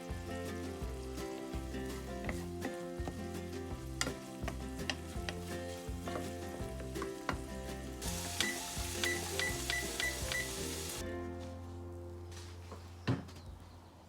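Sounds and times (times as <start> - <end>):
food sizzling in a pan: 0.0 - 11.0
background music: 0.0 - 13.0.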